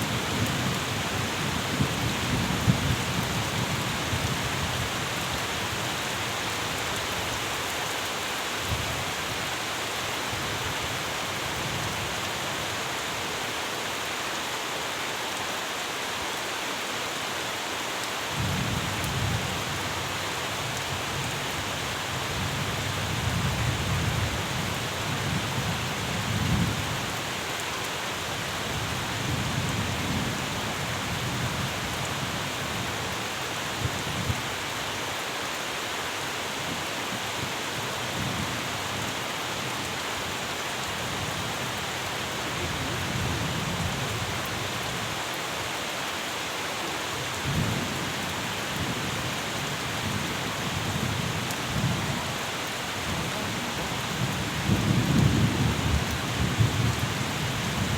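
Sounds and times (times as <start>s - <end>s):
steady rain hiss: 0.0s - 57.9s.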